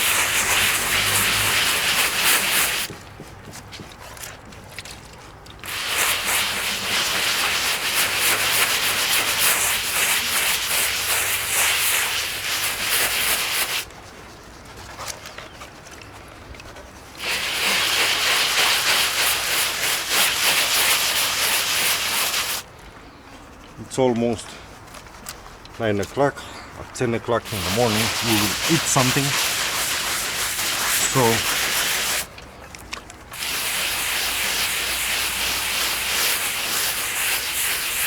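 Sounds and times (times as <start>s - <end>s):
scraping against cement wall: 0.0s - 11.6s, 24.4s - 32.3s.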